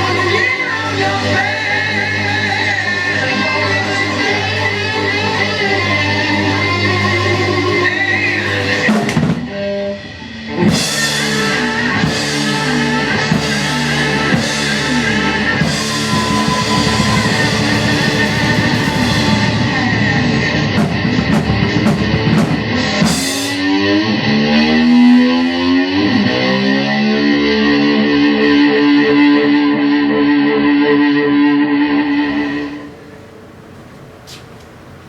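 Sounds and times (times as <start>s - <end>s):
distorted rock guitar: 0.0s - 33.4s
drum and cymbal hits: 8.4s - 24.1s.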